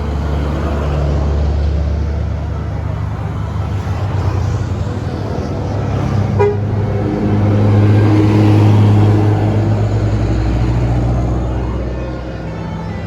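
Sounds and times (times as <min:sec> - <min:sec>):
bus engine running under load: 0:00.0 - 0:13.0
held horn tone: 0:05.2 - 0:07.7
bus horn toot: 0:05.2 - 0:08.2.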